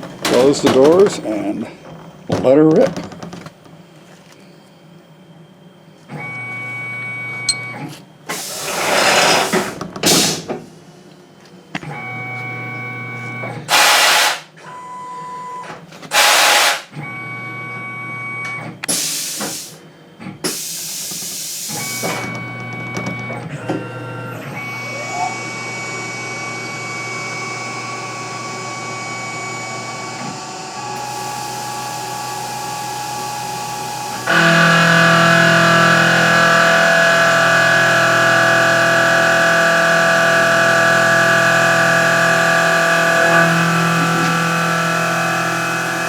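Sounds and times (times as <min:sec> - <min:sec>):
milling machine motor whine: 0:04.3 - 0:09.7, 0:21.7 - 0:46.0
hissing air bursts: 0:08.3 - 0:10.5, 0:13.7 - 0:14.5, 0:16.1 - 0:16.9, 0:18.9 - 0:19.8.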